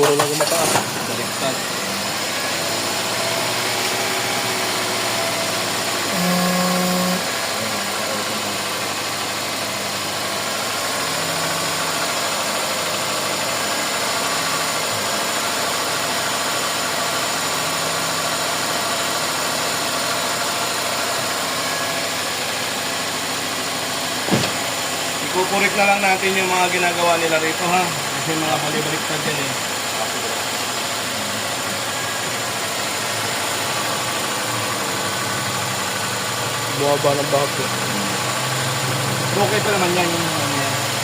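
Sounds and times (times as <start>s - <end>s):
car engine idling: 0.0s - 41.0s
brief higher tone: 6.1s - 7.3s.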